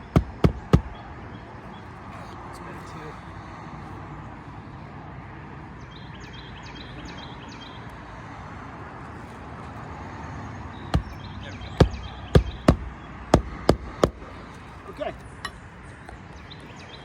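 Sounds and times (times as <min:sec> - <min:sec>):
hammer driving nails into shingles: 0:00.0 - 0:01.0, 0:10.9 - 0:11.2, 0:11.8 - 0:14.3
steady background hum: 0:00.0 - 0:01.1.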